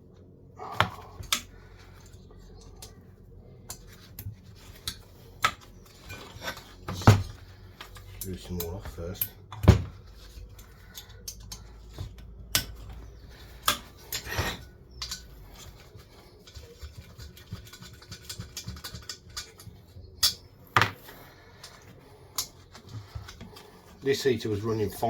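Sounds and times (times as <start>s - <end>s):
metal clicks of hand tools: 13.6s - 15.3s.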